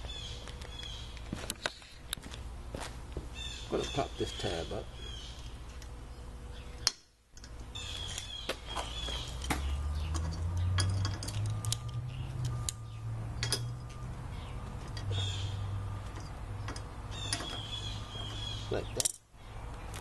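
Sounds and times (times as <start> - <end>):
steady low hum: 0.0 - 20.0
metal parts clicking and clinking: 6.8 - 14.0, 14.8 - 15.3, 16.0 - 19.3.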